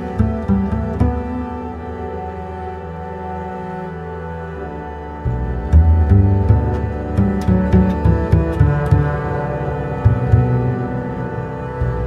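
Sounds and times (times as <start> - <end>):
bowed string bass line: 0.0 - 12.0
sustained synth tones: 0.0 - 12.0.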